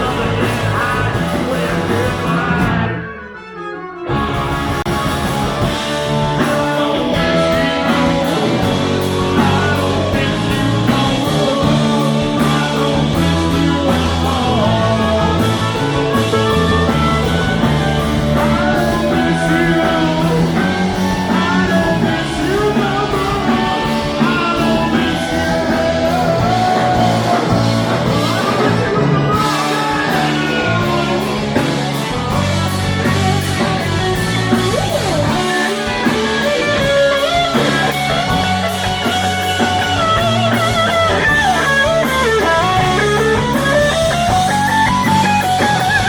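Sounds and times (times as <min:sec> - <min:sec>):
live rock band playing: 0:00.0 - 0:46.0.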